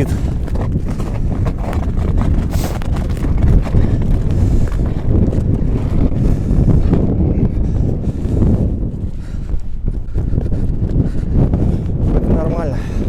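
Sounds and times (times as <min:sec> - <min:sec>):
footsteps crunching on ice: 0:00.0 - 0:06.2
wind buffeting microphone: 0:00.0 - 0:13.0.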